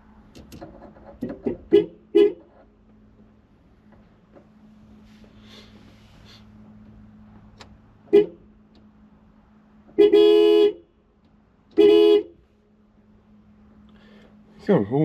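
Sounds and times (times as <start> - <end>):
van horn honking: 1.3 - 2.7, 8.0 - 8.6, 9.9 - 11.0, 11.7 - 12.5.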